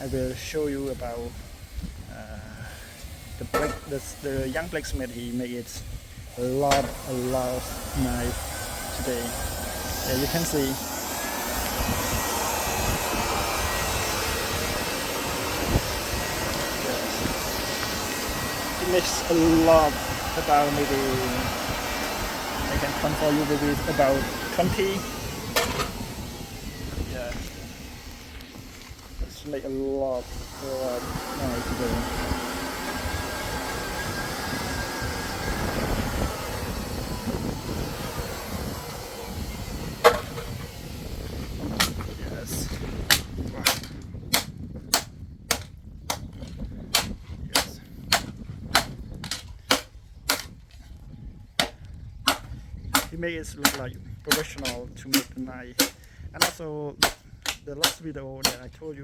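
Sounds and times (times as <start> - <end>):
machine air rushing: 0.0 - 45.3
sharp knock: 40.0 - 40.5.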